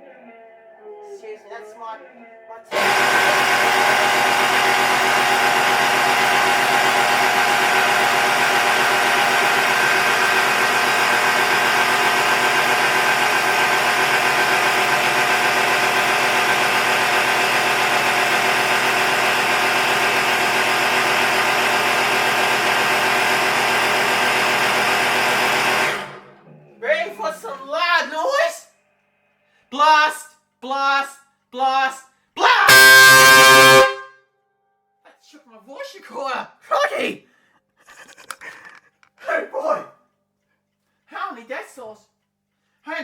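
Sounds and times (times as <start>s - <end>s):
air horns blasting: 2.7s - 5.8s, 32.4s - 34.3s.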